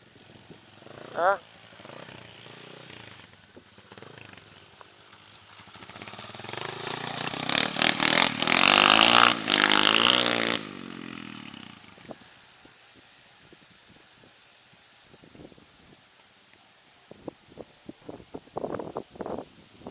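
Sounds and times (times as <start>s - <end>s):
pit bike engine revving: 0.2s - 12.2s.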